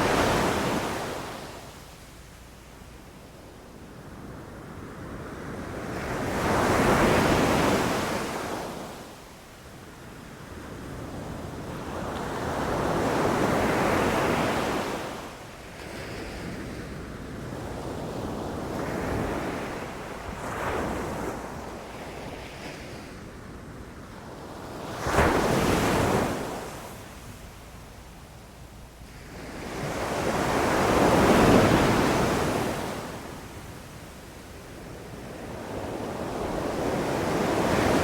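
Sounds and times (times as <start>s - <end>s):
ocean waves breaking on shore: 0.0s - 2.3s, 24.2s - 27.4s, 34.8s - 38.0s.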